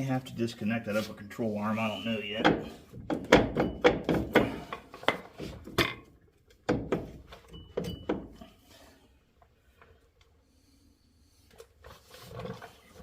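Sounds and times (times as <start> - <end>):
metal knocks and clunks: 2.2 - 8.4.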